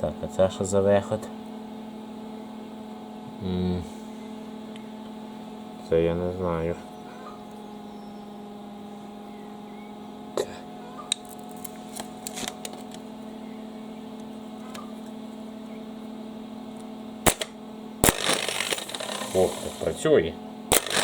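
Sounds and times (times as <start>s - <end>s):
steady electrical hum: 0.0s - 21.0s
sharp electrical snap: 17.2s - 20.0s, 20.7s - 21.0s.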